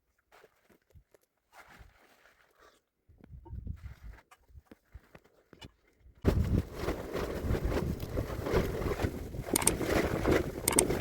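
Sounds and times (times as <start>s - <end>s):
faint clicks: 10.6s - 11.0s.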